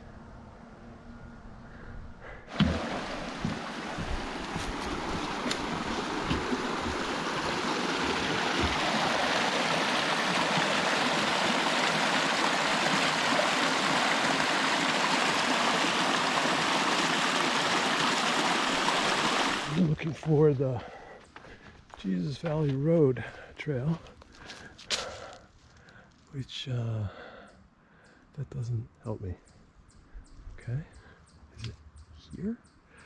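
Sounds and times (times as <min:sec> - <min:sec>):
soft footstep thumps: 0:02.5 - 0:08.9
stream water rushing: 0:02.5 - 0:20.0.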